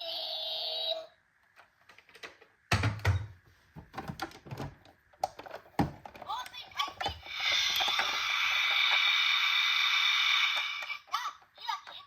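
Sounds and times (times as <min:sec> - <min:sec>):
plastic toys clicking and knocking: 0:04.0 - 0:09.4, 0:10.1 - 0:12.0
toy vehicle electronic sound: 0:06.3 - 0:12.0.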